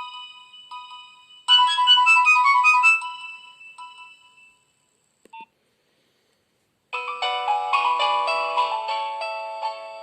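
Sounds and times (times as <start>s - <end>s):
phone ringtone melody: 0.0s - 4.8s, 7.0s - 10.0s.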